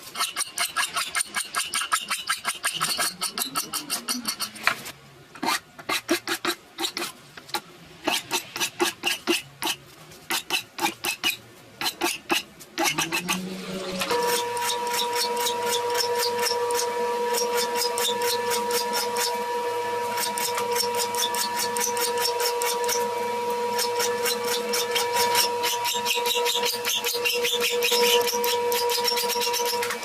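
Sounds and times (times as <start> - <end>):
power grinder whining: 10.8 - 30.0
rapid ticking of grinding: 23.8 - 30.0.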